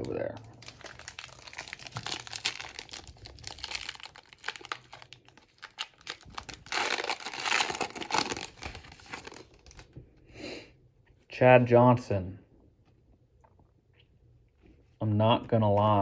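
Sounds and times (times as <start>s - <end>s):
foil wrapper crinkling and tearing: 0.0s - 9.9s.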